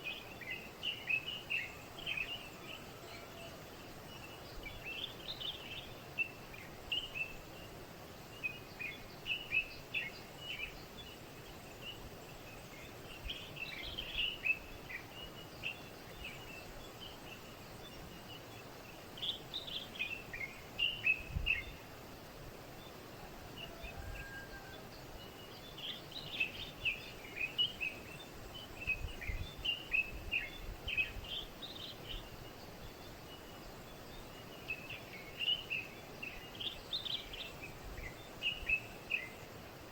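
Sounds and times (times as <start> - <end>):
steady background hiss: 0.0 - 39.9
small birds chirping: 24.8 - 39.9.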